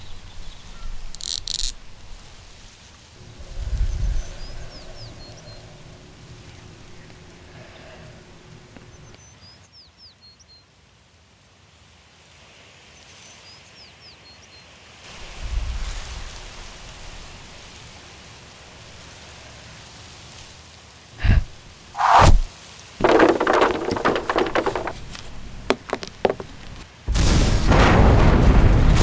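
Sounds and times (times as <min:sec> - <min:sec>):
outdoor ambience: 0:03.2 - 0:09.2, 0:21.2 - 0:29.0
sharp knock: 0:21.2 - 0:26.6.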